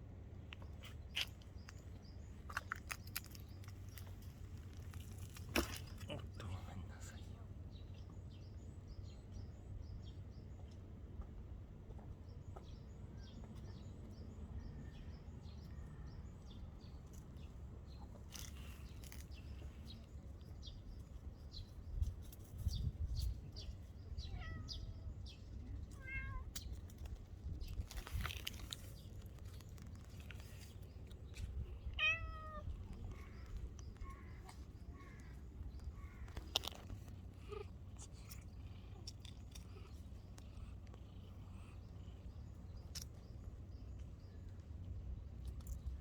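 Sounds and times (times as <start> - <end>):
cat meowing: 24.3 - 24.9, 26.0 - 26.4, 32.0 - 32.7.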